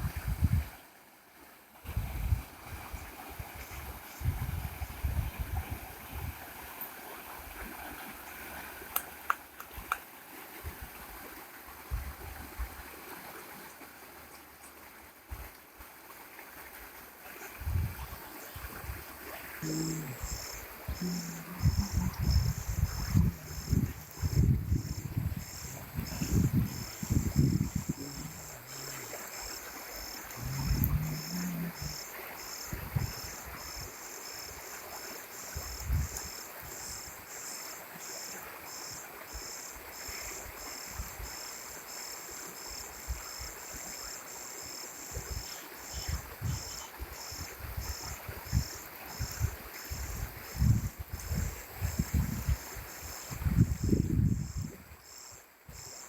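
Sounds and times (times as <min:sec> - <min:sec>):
insect chirping: 0:17.4 - 0:56.0.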